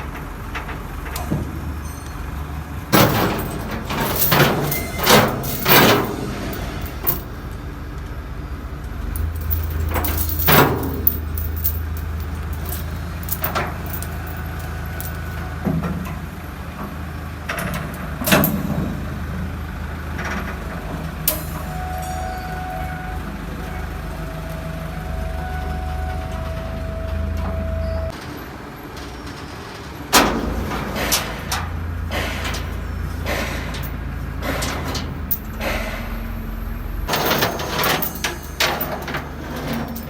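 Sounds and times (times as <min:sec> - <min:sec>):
metal clanks and scrapes: 0:02.9 - 0:07.4, 0:09.2 - 0:15.4, 0:30.2 - 0:35.9, 0:37.1 - 0:40.0.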